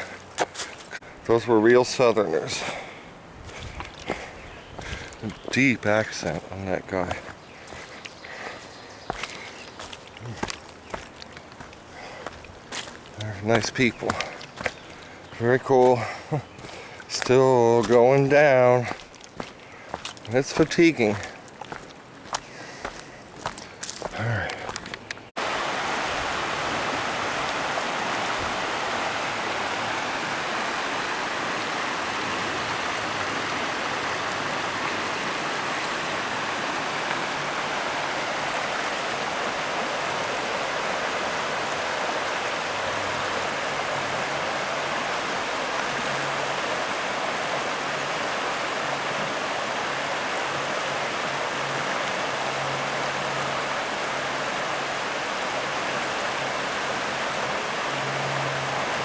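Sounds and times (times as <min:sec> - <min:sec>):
river flowing over rocks: 0:25.4 - 0:59.0.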